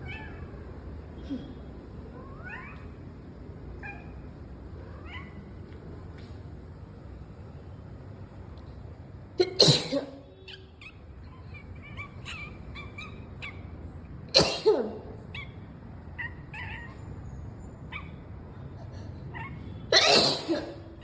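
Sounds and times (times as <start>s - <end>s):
cat calling faintly: 0.0s - 5.8s
person sneezing: 9.4s - 10.2s, 20.0s - 20.8s.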